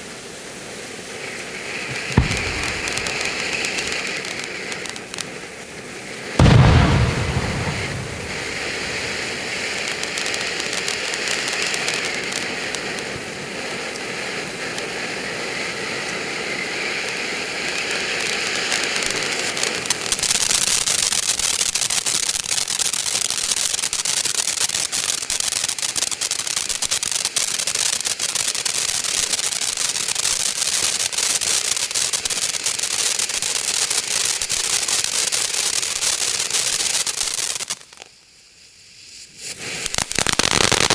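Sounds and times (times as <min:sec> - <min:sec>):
firework crackle: 0:00.0 - 0:40.9
fountain firework hissing: 0:00.0 - 0:40.9.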